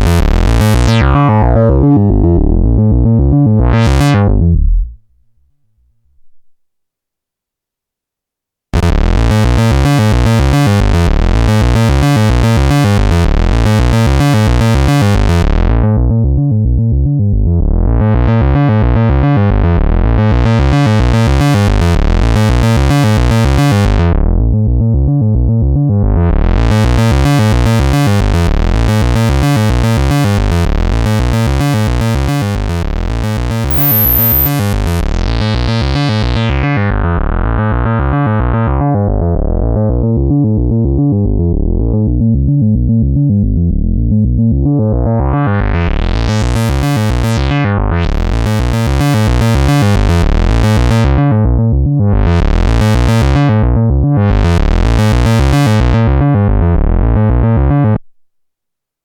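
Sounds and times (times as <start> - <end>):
modular synthesizer note pattern: 0.5 - 4.8, 33.7 - 34.6.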